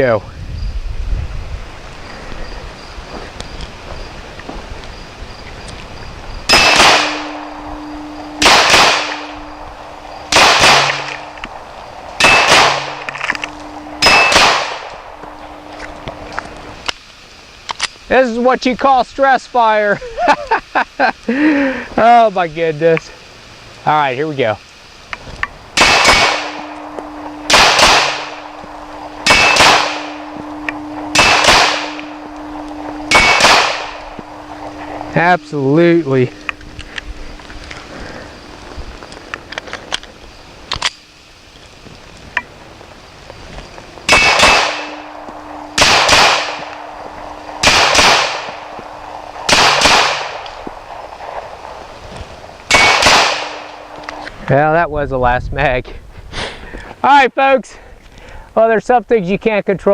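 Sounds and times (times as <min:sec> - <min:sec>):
metallic ringing tone: 0:06.0 - 0:16.9, 0:26.0 - 0:39.6, 0:44.0 - 0:47.7
pistol shots: 0:06.5 - 0:07.4, 0:08.4 - 0:09.4, 0:10.3 - 0:11.3, 0:12.2 - 0:13.1, 0:14.0 - 0:14.9, 0:25.8 - 0:28.5, 0:29.2 - 0:34.0, 0:44.1 - 0:45.2, 0:45.8 - 0:46.9, 0:47.6 - 0:48.7, 0:49.4 - 0:50.4, 0:52.7 - 0:53.9.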